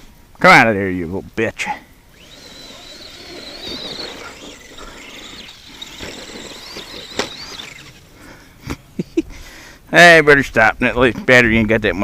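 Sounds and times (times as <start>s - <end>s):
electric motor and gears whining: 2.1s - 8.2s.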